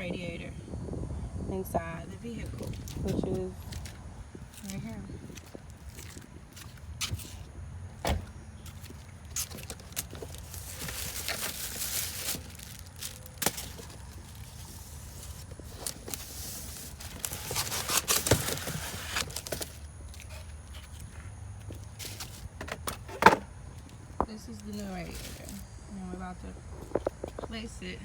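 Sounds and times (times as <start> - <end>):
steady low rumble: 0.0 - 17.3
rustling: 8.6 - 23.2, 24.2 - 25.7.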